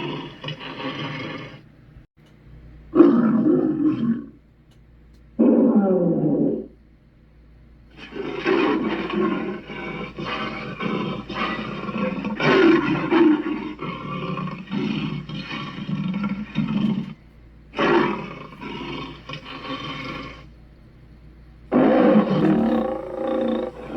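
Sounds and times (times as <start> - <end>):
gravelly monster roar: 21.7 - 23.9.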